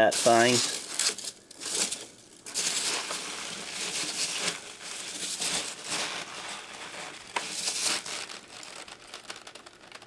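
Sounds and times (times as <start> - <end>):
rummaging through packing peanuts: 0.0 - 10.0.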